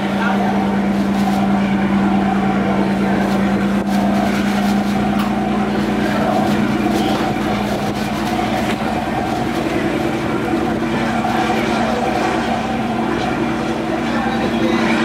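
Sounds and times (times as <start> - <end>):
ferry engines droning: 0.0 - 15.0.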